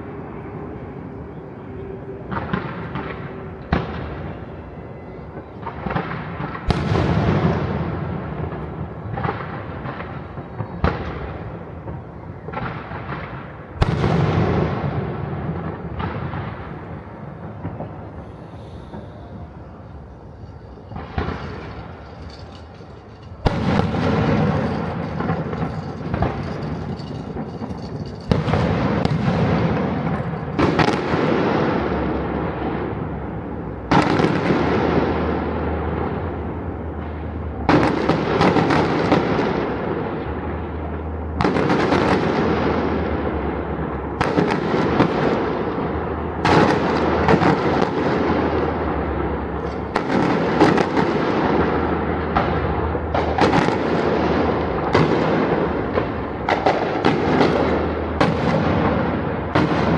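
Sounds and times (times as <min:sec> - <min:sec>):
fireworks crackle and rumble: 0:00.0 - 0:59.9
fireworks bangs: 0:05.6 - 0:33.1, 0:37.0 - 0:59.9
distant firework bursts: 0:12.5 - 0:33.0, 0:37.0 - 0:59.9.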